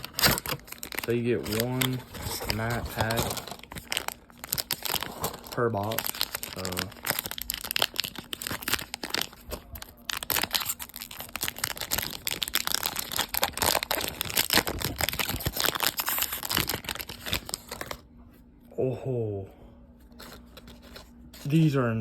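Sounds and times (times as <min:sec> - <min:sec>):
wrapper crinkling and tearing: 0:00.0 - 0:18.0.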